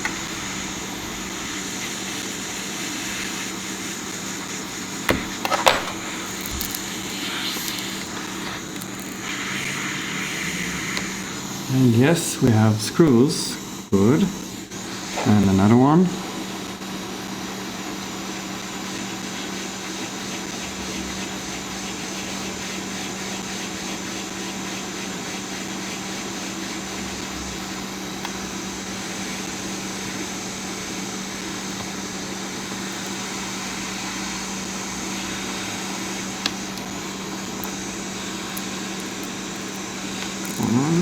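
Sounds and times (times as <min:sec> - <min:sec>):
fan whirring: 0:00.0 - 0:16.8, 0:28.2 - 0:41.0.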